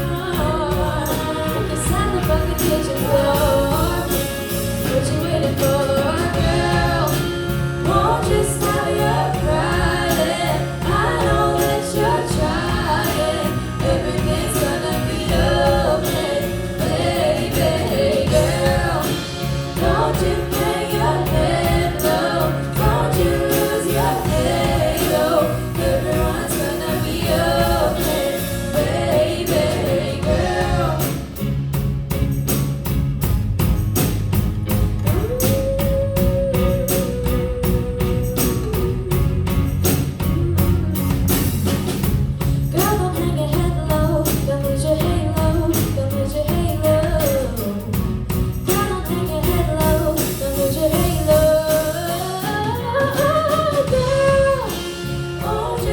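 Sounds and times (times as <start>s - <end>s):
instrumental accompaniment: 0.0s - 55.9s
person singing: 35.1s - 39.6s.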